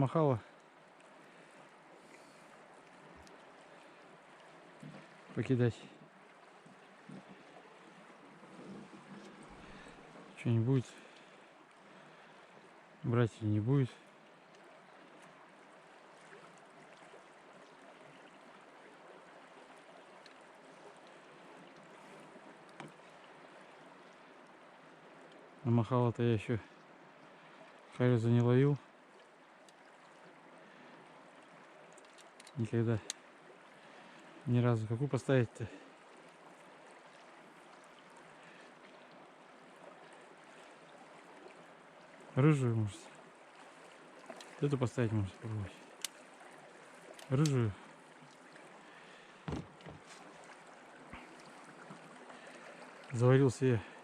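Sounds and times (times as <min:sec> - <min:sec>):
river water rushing: 0:28.8 - 0:54.0.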